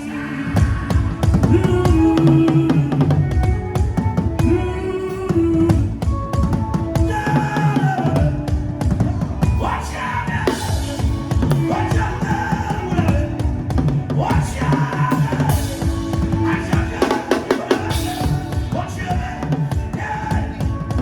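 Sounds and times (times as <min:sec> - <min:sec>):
fast dense drumming: 0:00.6 - 0:04.6, 0:10.4 - 0:21.0.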